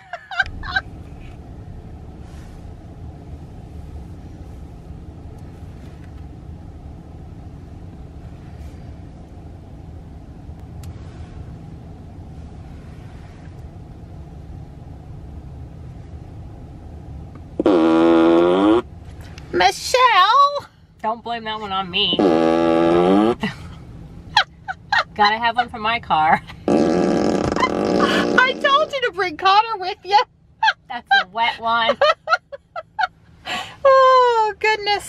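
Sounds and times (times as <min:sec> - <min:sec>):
low car cabin rumble: 0:00.0 - 0:35.0.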